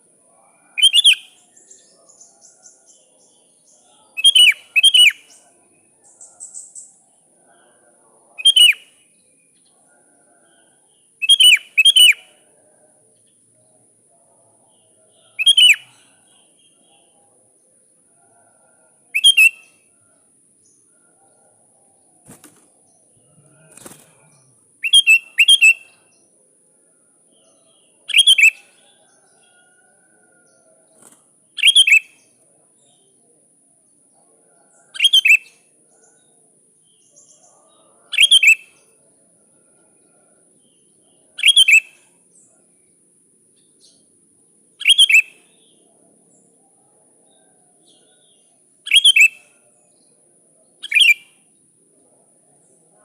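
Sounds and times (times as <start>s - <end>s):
bulbul calling: 19.1s - 19.7s, 24.8s - 26.0s, 50.8s - 51.3s.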